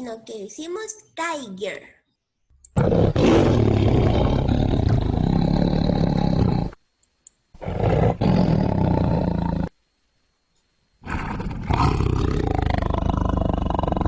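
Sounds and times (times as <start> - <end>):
tiger roaring: 2.8 - 6.8, 7.6 - 9.7, 11.0 - 14.0.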